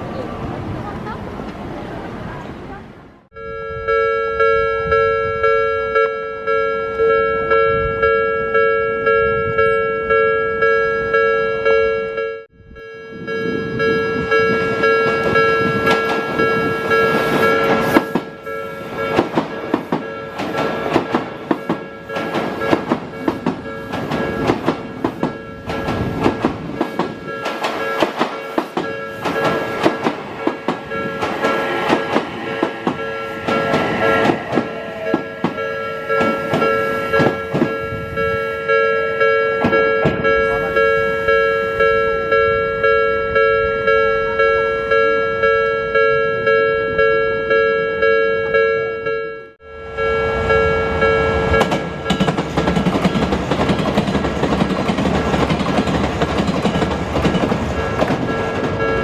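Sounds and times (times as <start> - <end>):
two-tone level-crossing alarm: 3.4 - 20.4, 21.6 - 52.4, 56.7 - 59.0
train wheels clattering on rail joints: 14.5 - 37.9, 39.6 - 40.7, 51.6 - 59.0.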